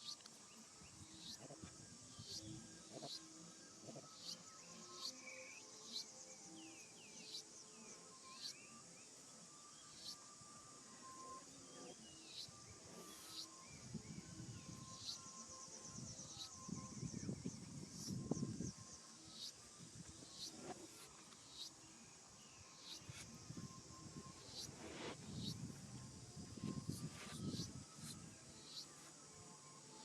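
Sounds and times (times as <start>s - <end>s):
insect drone: 0.0s - 30.0s
low rustling noise: 23.1s - 28.3s.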